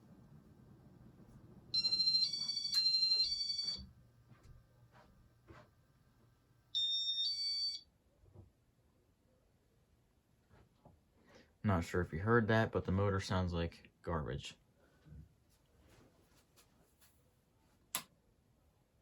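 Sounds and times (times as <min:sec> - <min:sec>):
ceiling fan motor hum: 0:00.0 - 0:07.3.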